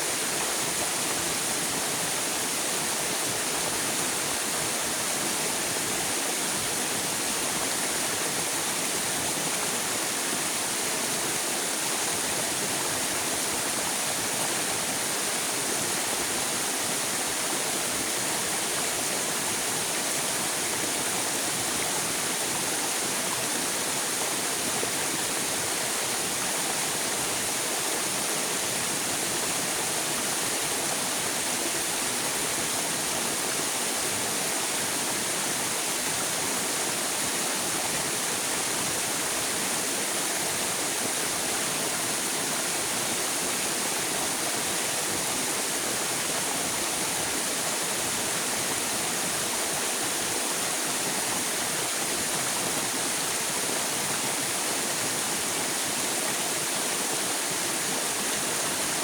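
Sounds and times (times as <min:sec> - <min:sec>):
river water rushing: 0:00.0 - 0:59.0.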